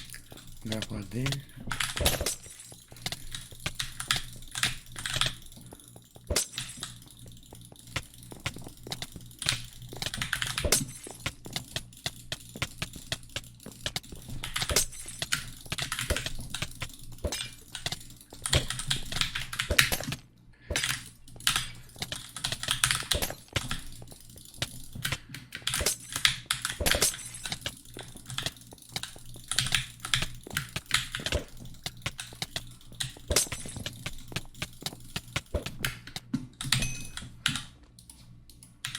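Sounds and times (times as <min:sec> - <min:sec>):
sharp clicks and taps: 0:00.0 - 0:36.8
steady low hum: 0:00.0 - 0:38.9.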